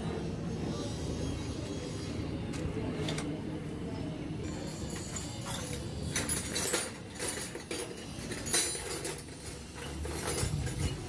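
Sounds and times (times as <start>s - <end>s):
hand tools clinking on metal: 4.7s - 11.0s.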